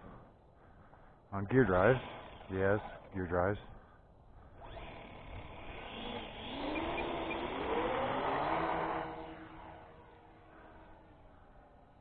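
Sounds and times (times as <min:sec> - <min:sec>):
electric motors whining: 0:04.6 - 0:11.2.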